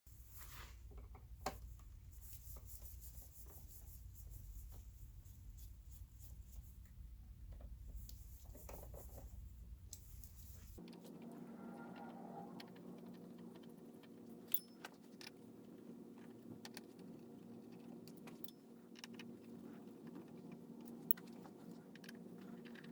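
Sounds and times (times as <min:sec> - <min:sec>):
low hum: 0:09.4 - 0:14.7.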